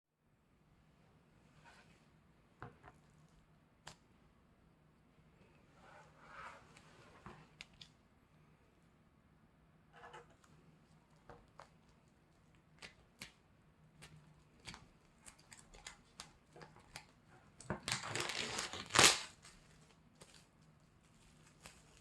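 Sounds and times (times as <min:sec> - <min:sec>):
plastic wrapping tearing: 0:17.8 - 0:22.0.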